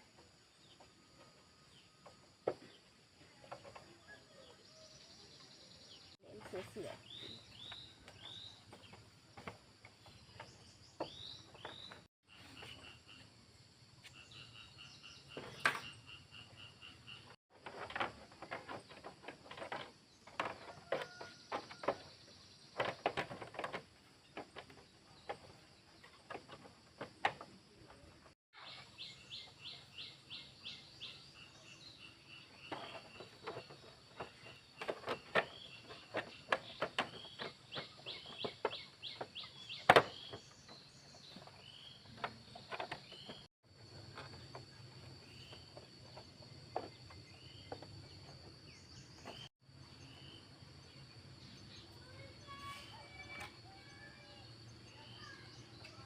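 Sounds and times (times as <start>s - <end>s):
birds chirping: 0.0s - 43.5s, 44.2s - 56.0s.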